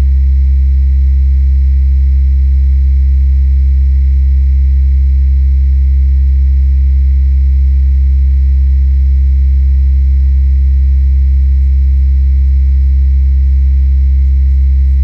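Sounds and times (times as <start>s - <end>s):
low electrical hum: 13.8s - 15.0s.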